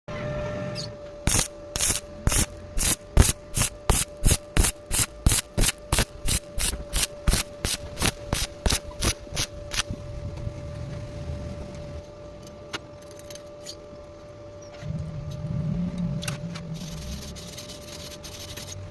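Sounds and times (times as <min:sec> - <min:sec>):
steady hum: 0:00.1 - 0:18.9
rhythmic tool strokes: 0:01.2 - 0:09.9, 0:16.8 - 0:18.9.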